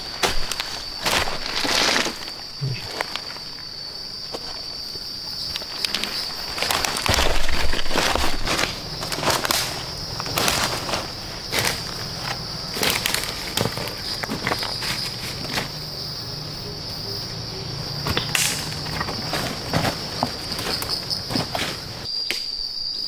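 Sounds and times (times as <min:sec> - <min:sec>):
insects chirring: 0:00.0 - 0:23.0
close crackles and knocks: 0:05.4 - 0:22.1.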